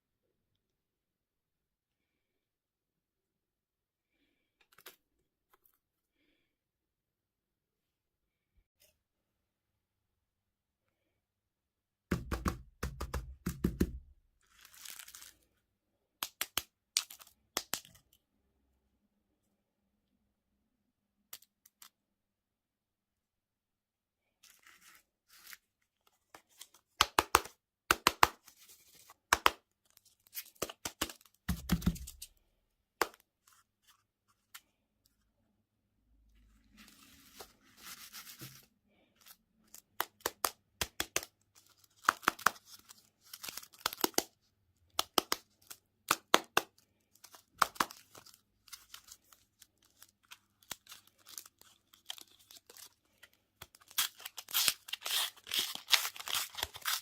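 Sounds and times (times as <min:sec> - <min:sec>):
packaging crackling and ripping: 0:53.6 - 0:57.0.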